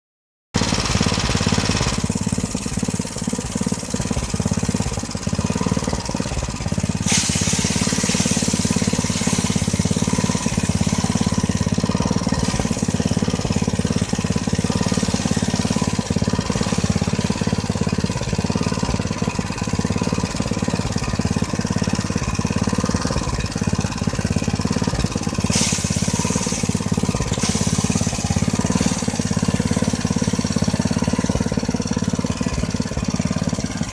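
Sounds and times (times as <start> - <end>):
threshing machine rattling: 0.6 - 33.9
high hissing bursts: 7.0 - 11.6, 25.4 - 29.2.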